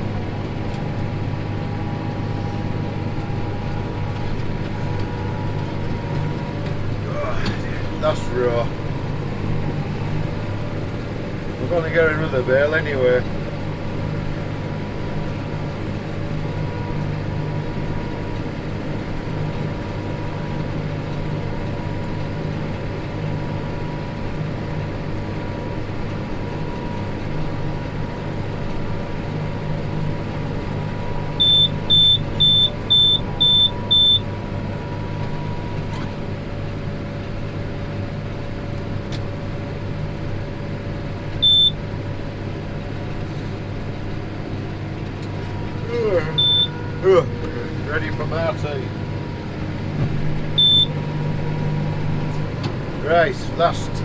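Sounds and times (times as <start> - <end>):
tractor engine running: 0.0 - 54.0
high electronic warning beeps: 31.3 - 34.4, 41.4 - 41.8, 45.8 - 48.8, 50.4 - 51.4.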